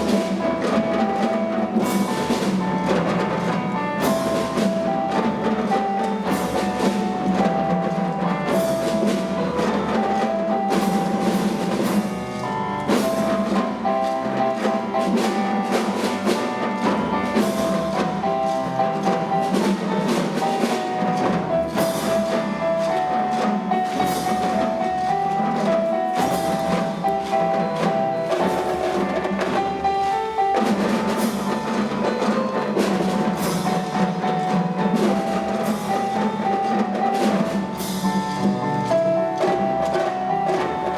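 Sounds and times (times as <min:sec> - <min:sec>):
bell-like mallet melody: 0:00.0 - 0:40.9
percussion beat: 0:00.0 - 0:40.9.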